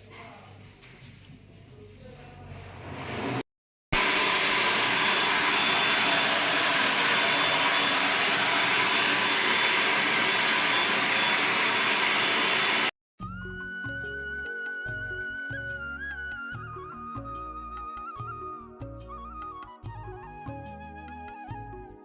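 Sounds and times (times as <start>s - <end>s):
hair dryer blowing: 4.0s - 13.0s.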